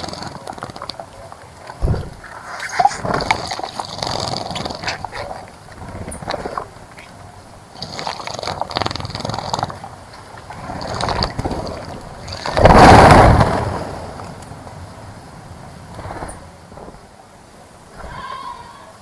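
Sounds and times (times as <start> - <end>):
birds splashing in water: 0.0 - 13.5.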